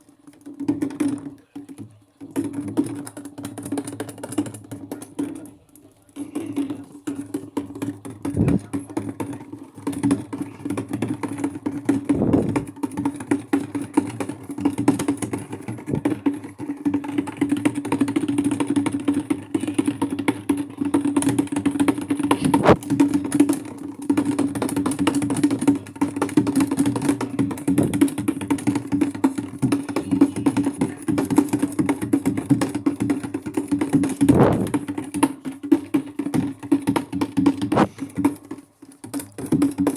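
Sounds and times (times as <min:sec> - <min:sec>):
washing machine running: 0:00.0 - 0:39.9.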